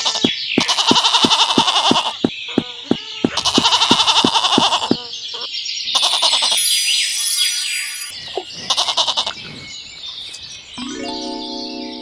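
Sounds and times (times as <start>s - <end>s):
goat bleating: 0.0s - 5.0s, 6.0s - 6.5s, 8.6s - 9.4s
birds chirping: 0.0s - 12.0s.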